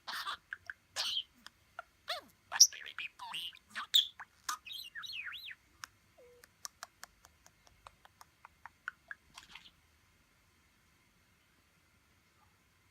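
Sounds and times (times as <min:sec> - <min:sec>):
budgerigar warbling chirps: 0:00.0 - 0:05.6
budgerigar clicks: 0:05.8 - 0:09.6.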